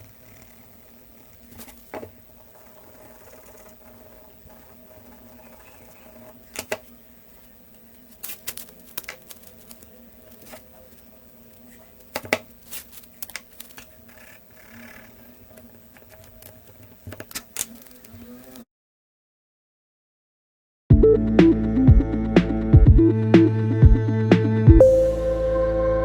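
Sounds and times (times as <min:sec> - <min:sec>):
pencil scratching and tapping tape: 0:02.6 - 0:06.8.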